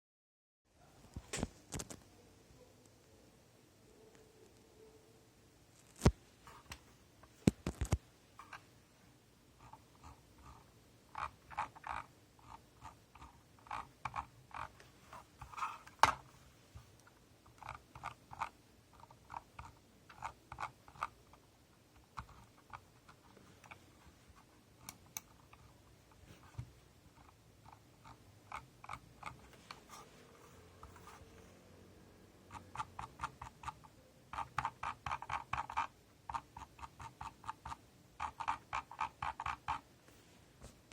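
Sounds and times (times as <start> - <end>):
mouse scroll wheel clicking: 9.6 - 16.2, 17.5 - 23.8, 26.4 - 29.9, 32.5 - 39.8.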